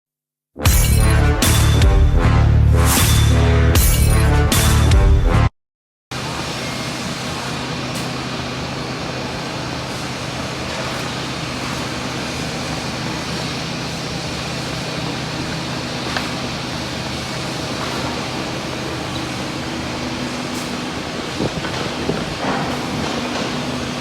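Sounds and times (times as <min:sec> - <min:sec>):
milling machine humming: 0:06.2 - 0:24.0.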